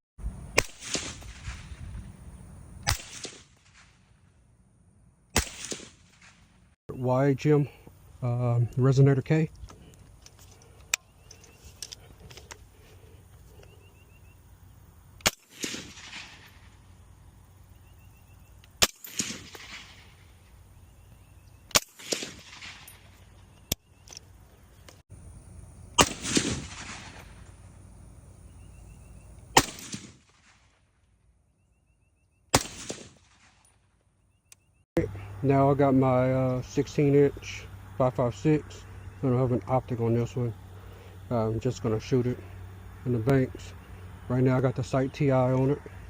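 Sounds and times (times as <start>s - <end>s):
suppressed rifle shots with echo: 0.5s - 1.8s, 2.8s - 4.0s, 5.4s - 6.6s, 15.2s - 16.7s, 18.8s - 20.2s, 21.7s - 23.0s, 26.0s - 27.4s, 29.5s - 30.8s, 32.5s - 33.7s.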